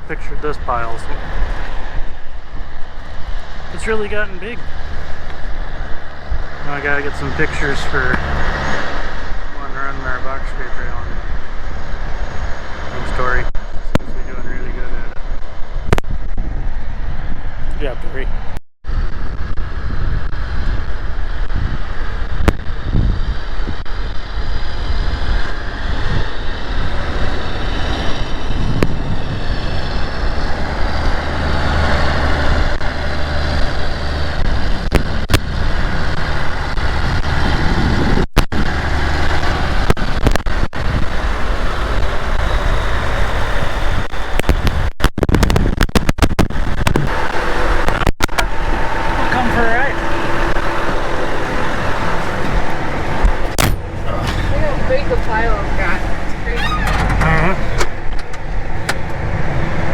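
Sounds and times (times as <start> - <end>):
diesel engine running: 0.0 - 15.1, 19.0 - 44.8, 46.5 - 59.9.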